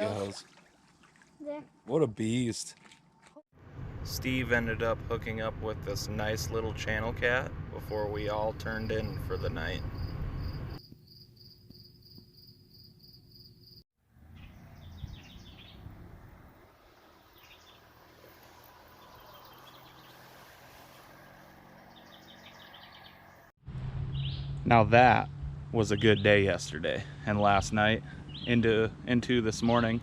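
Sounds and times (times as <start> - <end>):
low hum: 3.6 - 10.8, 23.6 - 28.3
insects chirping: 8.0 - 13.8
birds chirping in trills: 13.2 - 15.9, 17.2 - 23.5, 24.1 - 24.6, 28.0 - 28.6.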